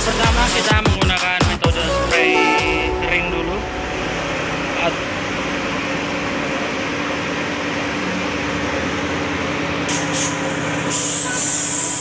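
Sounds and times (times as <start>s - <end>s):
machine hum: 2.6s - 9.8s
paint spray gun hissing: 9.9s - 12.0s.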